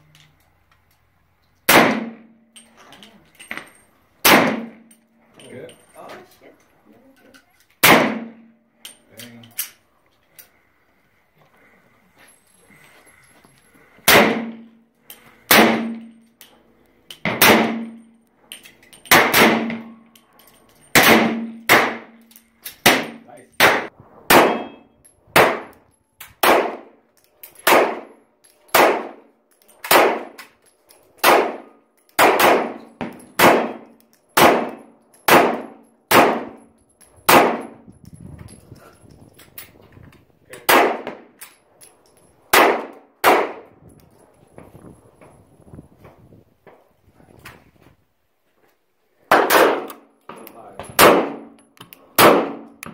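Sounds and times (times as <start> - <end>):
bullets clanging on steel targets: 0.1 - 6.4, 7.1 - 9.8, 12.3 - 39.8
gunshots: 1.7 - 2.3, 4.2 - 4.8, 7.8 - 8.5, 14.1 - 14.6, 15.5 - 16.1, 17.3 - 18.0, 19.1 - 19.9, 20.9 - 22.2, 22.8 - 24.8, 25.4 - 25.7, 26.4 - 26.9, 27.6 - 28.1, 28.7 - 29.2, 29.9 - 30.4, 31.2 - 32.8, 33.4 - 33.8, 34.4 - 36.6, 37.3 - 37.7, 40.6 - 41.2, 42.5 - 43.7, 49.3 - 49.9, 51.0 - 51.5, 52.2 - 52.7.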